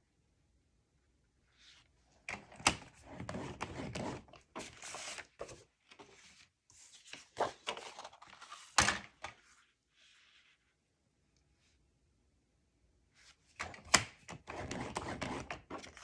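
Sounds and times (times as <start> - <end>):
scoring tool scraping paper: 3.0 - 5.5, 14.3 - 16.0.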